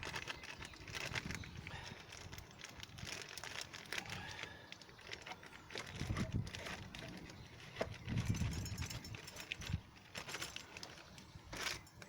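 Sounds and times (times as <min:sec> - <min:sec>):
light clicks and knocks of parts: 0:04.7 - 0:12.0.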